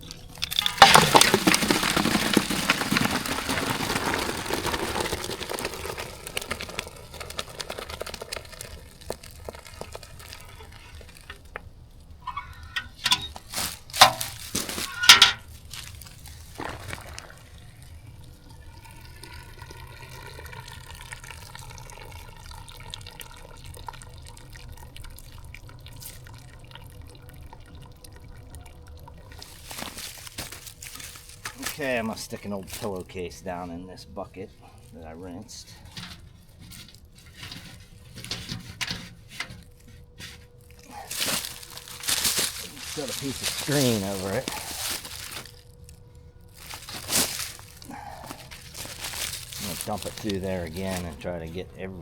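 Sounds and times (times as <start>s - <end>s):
liquid gushing and dripping: 0.0s - 14.7s, 15.3s - 38.2s.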